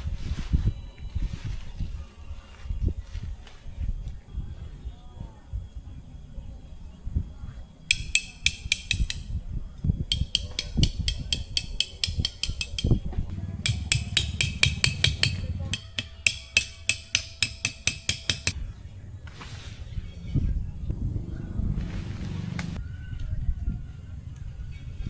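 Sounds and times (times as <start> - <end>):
hammer striking metal: 7.9 - 9.3, 10.1 - 18.6.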